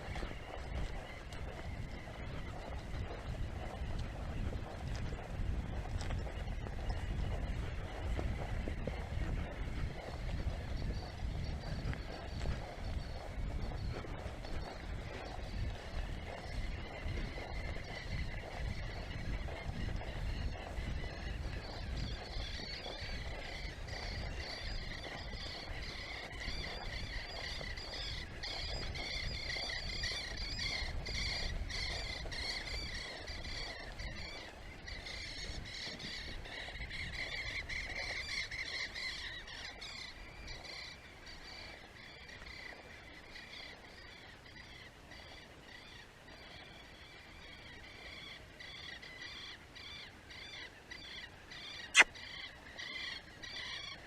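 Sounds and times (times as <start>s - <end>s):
birds chattering chorus: 0.0s - 54.0s.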